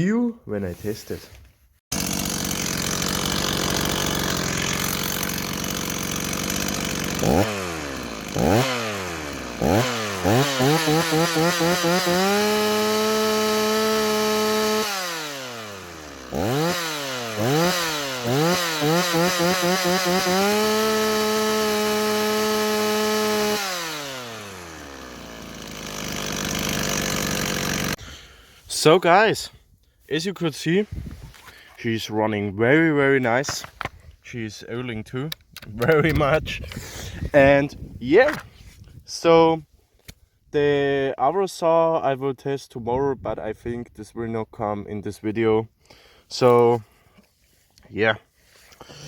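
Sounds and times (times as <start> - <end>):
chainsaw idling and revving: 1.9 - 28.4, 48.8 - 49.0.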